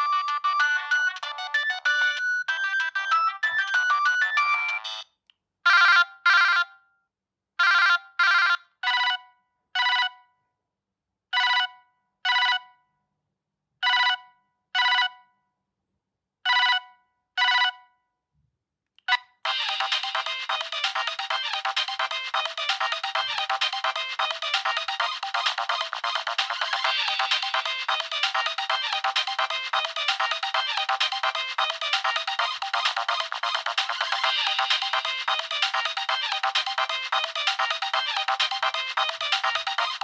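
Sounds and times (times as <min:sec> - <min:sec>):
mobile phone ringtone melody: 0:00.0 - 0:05.1, 0:05.7 - 0:06.9, 0:07.6 - 0:10.3, 0:19.4 - 0:40.0.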